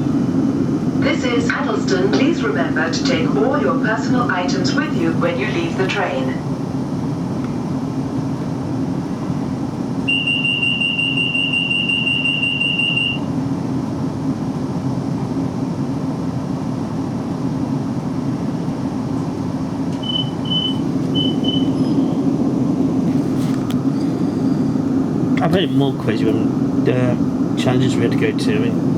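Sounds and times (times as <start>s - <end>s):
train steady hum: 0.0s - 28.9s
train door warning tone: 10.0s - 13.4s, 19.8s - 22.3s, 23.8s - 25.0s
short beeps: 10.1s - 13.3s, 20.0s - 22.0s.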